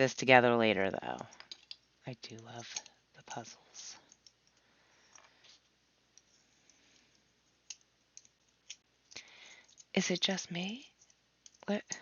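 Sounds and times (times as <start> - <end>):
plastic puzzle pieces clicking: 1.1 - 1.8.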